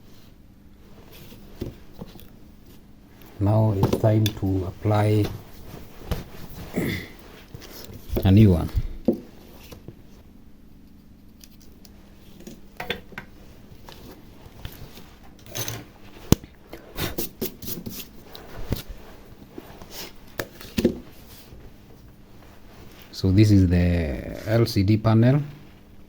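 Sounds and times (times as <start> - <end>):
clicks and rustles of hands and tools: 10.8 - 22.2.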